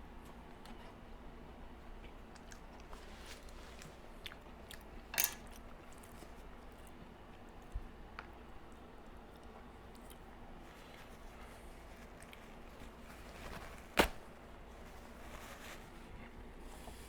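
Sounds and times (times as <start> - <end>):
chewing cake: 1.9 - 13.0.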